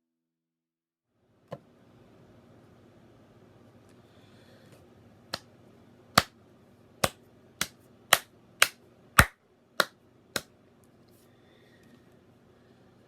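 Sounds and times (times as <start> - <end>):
sharp loud snaps: 6.2 - 6.4, 7.0 - 10.5.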